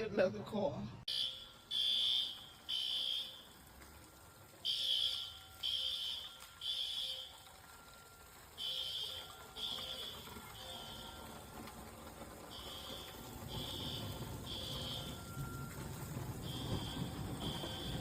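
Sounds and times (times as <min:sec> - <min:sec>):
smoke alarm beeping: 0:01.1 - 0:03.6, 0:04.6 - 0:11.5, 0:12.5 - 0:15.8, 0:16.4 - 0:18.0.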